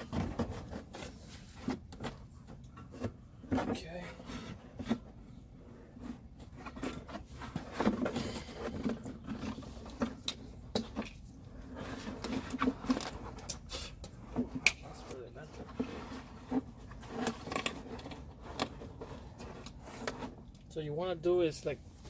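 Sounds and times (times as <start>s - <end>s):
plastic scraping and rubbing: 0.0s - 20.5s.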